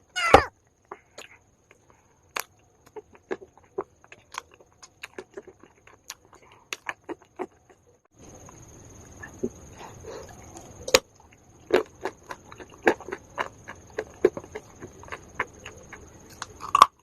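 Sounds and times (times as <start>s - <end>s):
clay being crunched and chewed: 1.2s - 7.9s, 10.3s - 17.0s.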